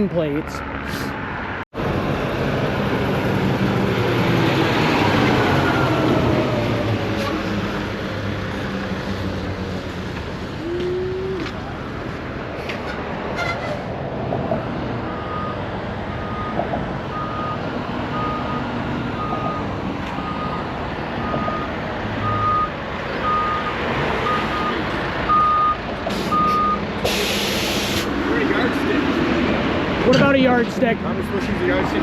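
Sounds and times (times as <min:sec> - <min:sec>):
traffic noise: 0:00.0 - 0:32.0
reversing alarm beeping: 0:15.1 - 0:28.0
loud hiss burst: 0:27.0 - 0:28.1.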